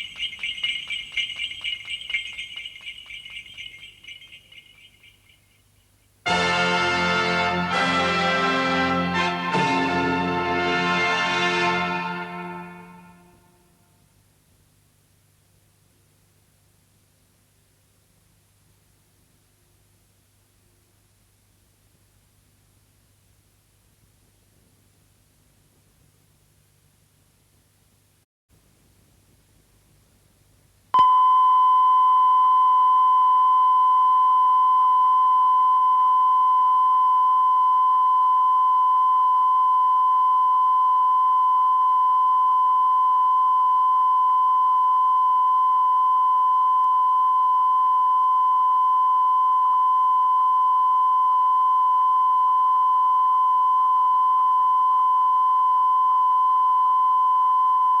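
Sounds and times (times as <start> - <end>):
steady pure test tone: 0.0 - 7.8, 31.0 - 58.0.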